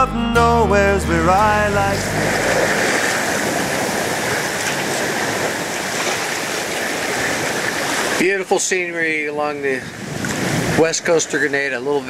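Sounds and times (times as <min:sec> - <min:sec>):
water rushing along hull: 0:01.6 - 0:12.0
wind noise: 0:02.0 - 0:08.2, 0:09.5 - 0:11.4.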